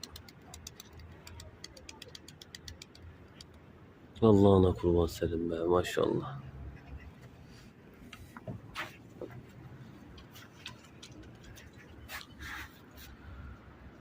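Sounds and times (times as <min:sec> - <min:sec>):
pigeons tapping and clicking: 0:00.0 - 0:03.7, 0:10.2 - 0:11.9.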